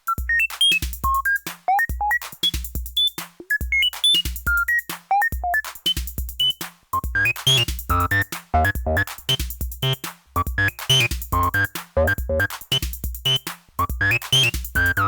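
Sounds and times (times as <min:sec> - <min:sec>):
drum machine bass thumps: 0:00.2 - 0:15.0
acid bass synthesizer pattern: 0:07.0 - 0:12.5, 0:13.2 - 0:15.0.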